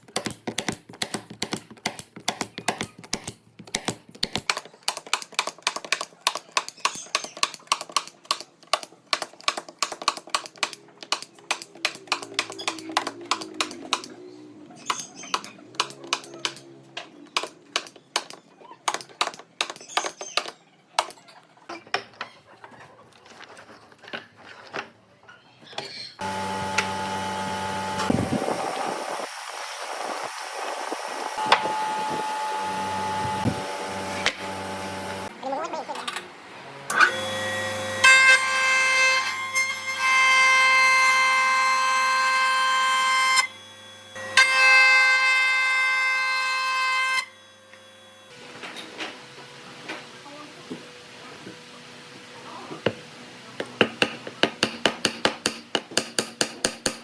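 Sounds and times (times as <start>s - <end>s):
electric tool motor humming: 26.2s - 35.3s.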